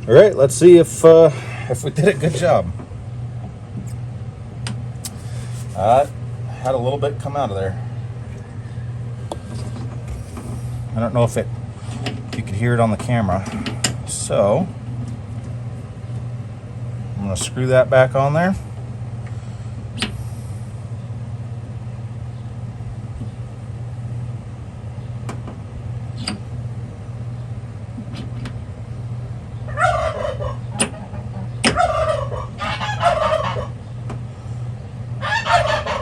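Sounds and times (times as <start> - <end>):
steady low hum: 0.0 - 36.0
turkeys gobbling: 29.7 - 33.8, 35.2 - 36.0.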